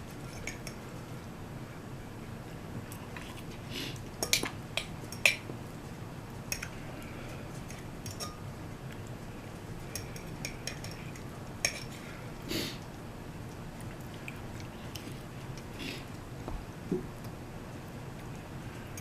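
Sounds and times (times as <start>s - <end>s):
utensils clinking against bowl: 4.2s - 5.4s, 7.6s - 8.4s, 9.9s - 12.0s.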